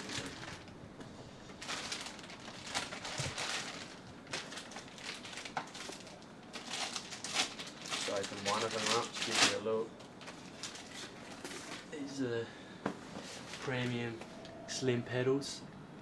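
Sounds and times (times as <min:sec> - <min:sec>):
packaging rustling and crinkling: 0:00.0 - 0:00.8, 0:01.4 - 0:11.9.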